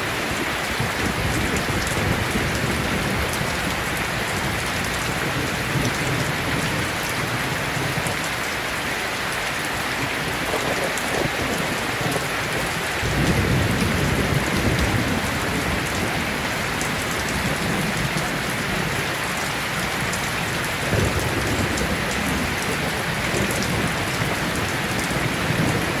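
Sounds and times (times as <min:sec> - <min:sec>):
heavy rain: 0:00.0 - 0:26.0
low rumble of thunder: 0:00.1 - 0:08.8, 0:09.7 - 0:26.0.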